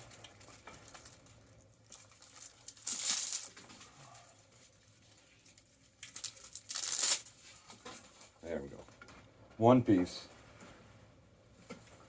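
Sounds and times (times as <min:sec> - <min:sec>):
wire insulation crinkling and scraping: 0:00.0 - 0:09.3.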